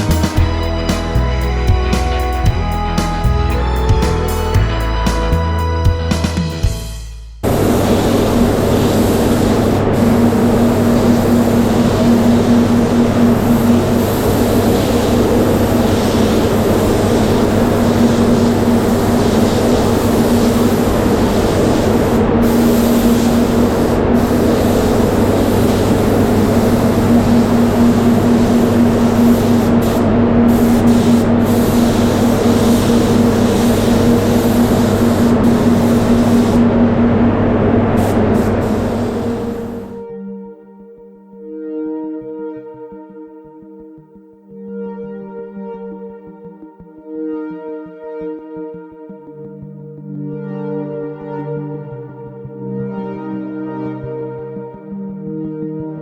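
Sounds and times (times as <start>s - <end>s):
spray gun hissing: 0.0s - 5.4s, 7.4s - 37.0s, 37.8s - 40.0s
extraction fans humming: 0.0s - 6.6s, 7.4s - 40.0s.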